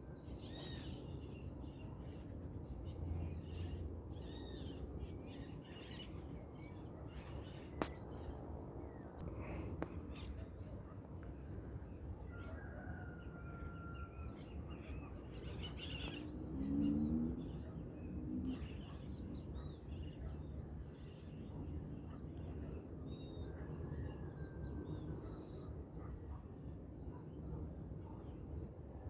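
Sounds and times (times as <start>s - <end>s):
many birds chirping: 8.9s - 24.5s.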